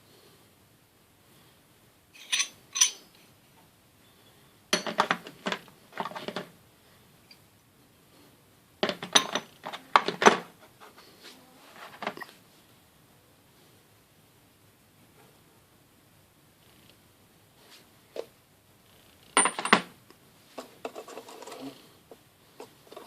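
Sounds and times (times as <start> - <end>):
metal hand tools clinking: 2.2 - 3.1.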